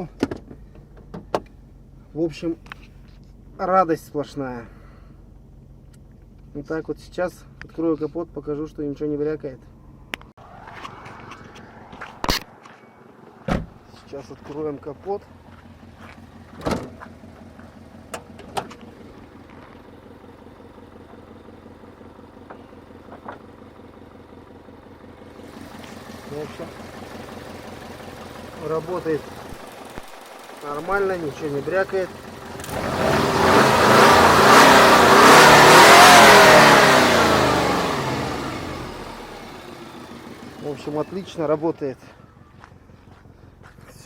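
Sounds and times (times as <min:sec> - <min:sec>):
car engine idling: 0:00.0 - 0:44.0
car engine revving: 0:09.8 - 0:13.5, 0:25.2 - 0:41.6.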